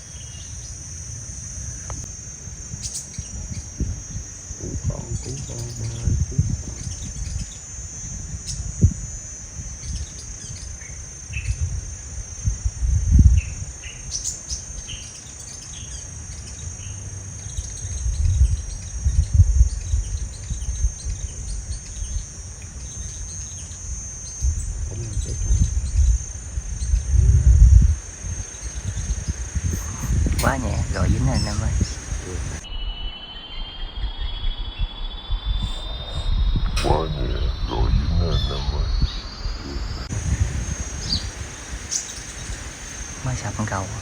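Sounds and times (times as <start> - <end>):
insect drone: 0.0 - 44.0
high bird chirps: 2.7 - 8.9, 9.7 - 11.8, 13.3 - 44.0
low rumbles on microphone: 2.7 - 10.2, 17.8 - 23.0, 24.4 - 44.0.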